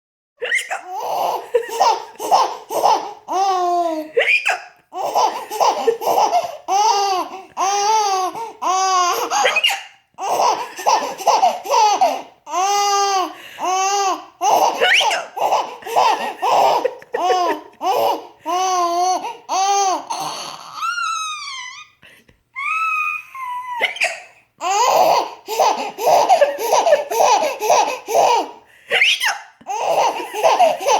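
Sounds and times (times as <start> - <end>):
young child laughing: 0.4 - 6.6, 9.1 - 12.2, 14.4 - 19.3, 22.6 - 30.9.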